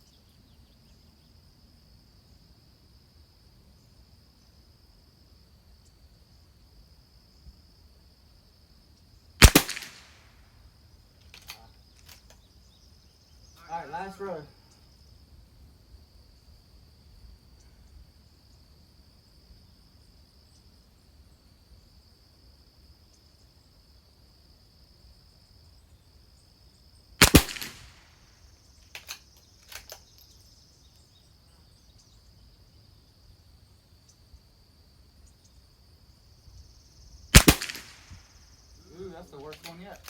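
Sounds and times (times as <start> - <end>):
rifle bolt clicks: 9.4 - 10.0, 11.2 - 12.4, 37.4 - 38.0
rifle shot: 9.4 - 10.4, 27.2 - 28.1, 37.3 - 38.3
high insect drone: 10.3 - 40.0.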